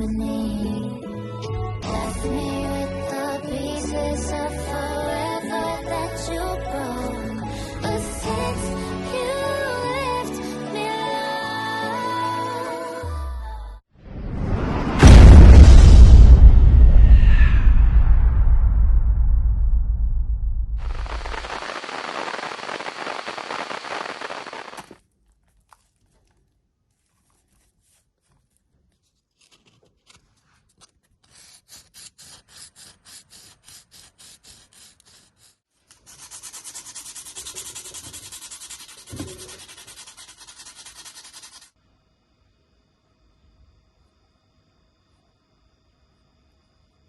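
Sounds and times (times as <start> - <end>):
sandpaper rubbing on wood: 31.2 - 41.7.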